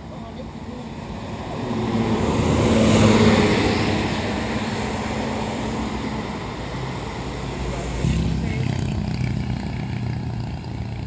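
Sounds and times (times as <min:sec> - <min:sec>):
bus driving past: 0:00.0 - 0:11.0.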